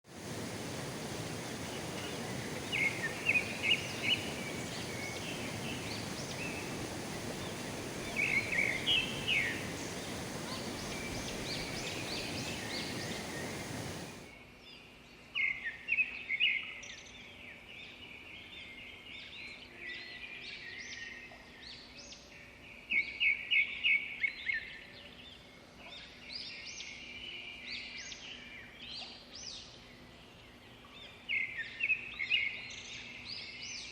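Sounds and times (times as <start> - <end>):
steady hiss: 0.0 - 14.3
small birds chirping: 0.1 - 14.3.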